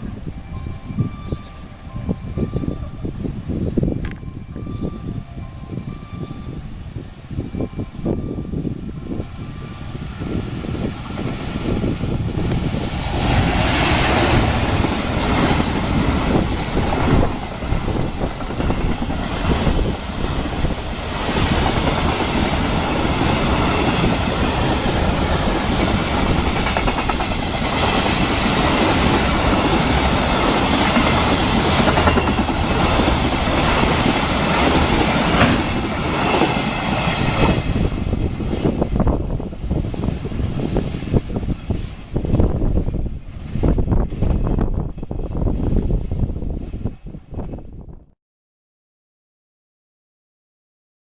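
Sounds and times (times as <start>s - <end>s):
train wheels clattering over rail joints: 12.4s - 37.8s.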